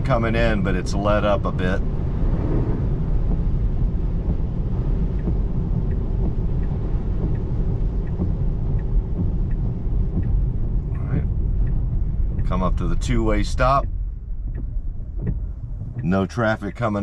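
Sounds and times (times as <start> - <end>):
road and tyre rumble in car: 0.0 - 17.0
faint light ticks: 3.1 - 16.2.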